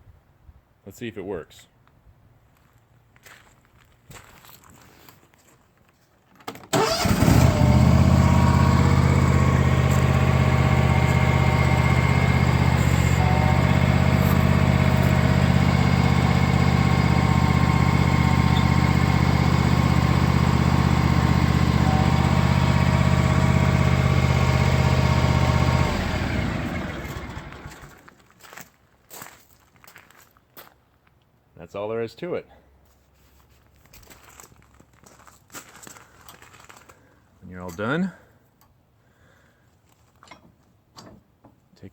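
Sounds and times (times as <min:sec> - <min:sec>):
engine cranking: 0:06.6 - 0:28.1
lawn tractor engine running: 0:06.6 - 0:28.2.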